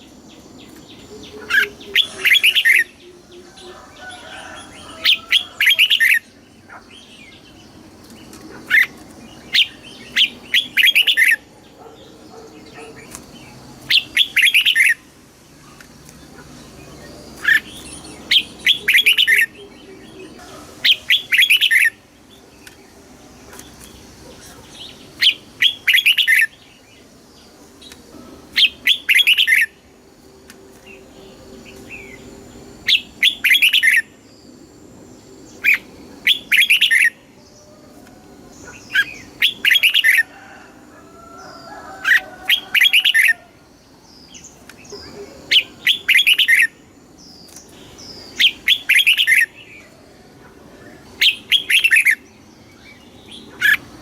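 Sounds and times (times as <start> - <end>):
bulbul singing: 0.0 - 30.1, 30.7 - 40.3, 41.3 - 54.0.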